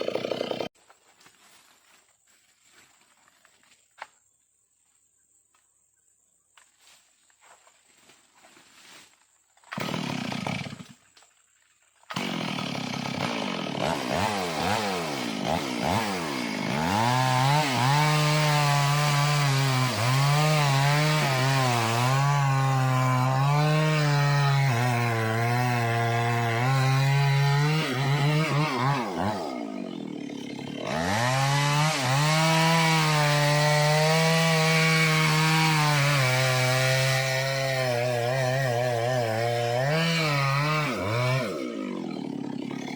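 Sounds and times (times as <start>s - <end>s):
chainsaw revving and cutting wood: 0.0s - 0.8s, 9.6s - 11.2s, 12.0s - 42.9s.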